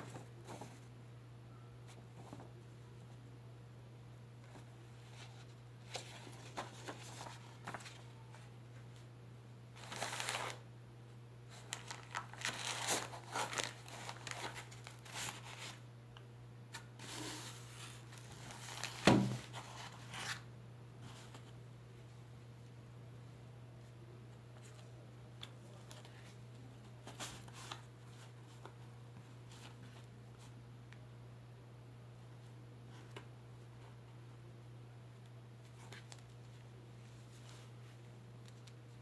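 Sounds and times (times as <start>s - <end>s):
packaging crinkling and tearing: 9.8s - 10.6s, 11.5s - 15.8s, 18.0s - 20.4s.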